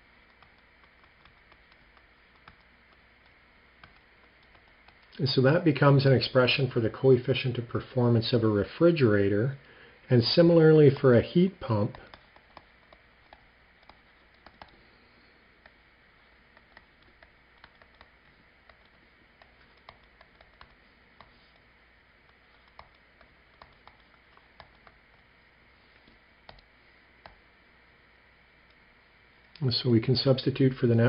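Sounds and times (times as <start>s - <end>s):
pen tapping while writing: 0.2s - 5.2s, 11.8s - 14.8s, 16.5s - 21.6s, 22.2s - 25.2s.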